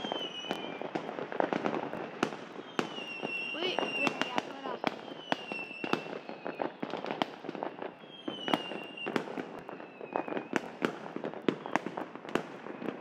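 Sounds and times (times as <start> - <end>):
high whistle sliding downward: 0.0 - 0.8
fireworks bangs and crackles: 0.0 - 13.0.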